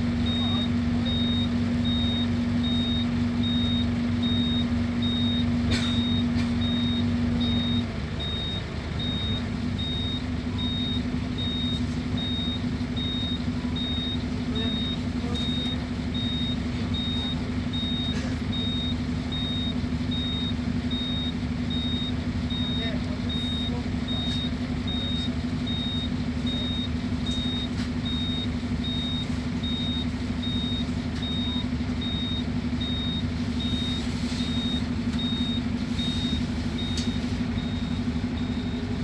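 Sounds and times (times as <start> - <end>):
diesel bus engine running: 0.0 - 39.0.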